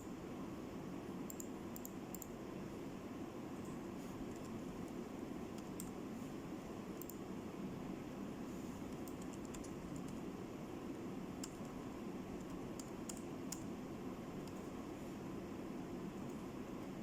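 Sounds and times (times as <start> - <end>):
steady low hum: 0.0 - 17.0
computer keys clicking: 1.2 - 2.4, 3.6 - 4.6, 5.5 - 6.0, 7.0 - 7.2, 8.9 - 10.2, 11.4 - 11.8, 12.4 - 13.7, 14.4 - 14.7.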